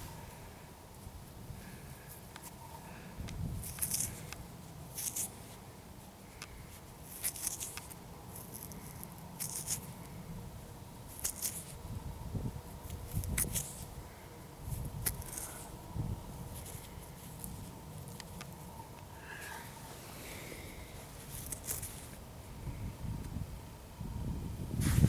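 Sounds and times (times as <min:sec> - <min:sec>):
wind rumble on microphone: 0:03.2 - 0:04.2, 0:11.7 - 0:16.9, 0:22.4 - 0:25.0
soil scraped by hand: 0:03.4 - 0:10.2, 0:11.0 - 0:11.8, 0:12.8 - 0:14.0, 0:14.6 - 0:18.7, 0:19.3 - 0:22.2, 0:24.7 - 0:25.0.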